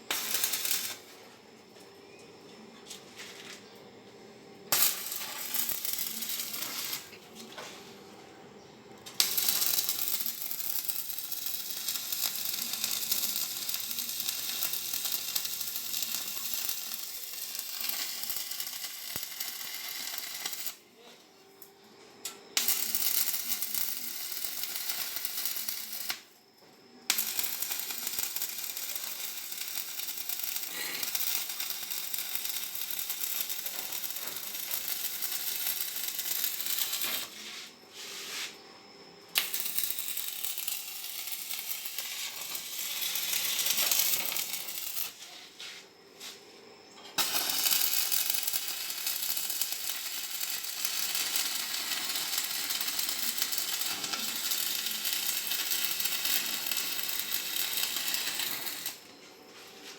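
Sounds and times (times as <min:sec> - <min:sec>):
arc welding crackling hiss: 0:00.0 - 0:01.2, 0:04.6 - 0:07.4, 0:09.0 - 0:21.1, 0:22.5 - 0:38.6, 0:39.2 - 0:46.4, 0:47.1 - 0:59.9.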